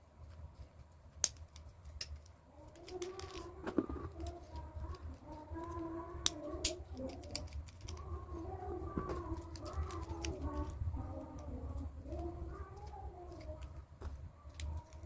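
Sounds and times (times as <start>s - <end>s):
plastic toy parts snapping together: 1.2s - 4.6s, 6.2s - 8.0s
dove cooing: 2.5s - 13.8s.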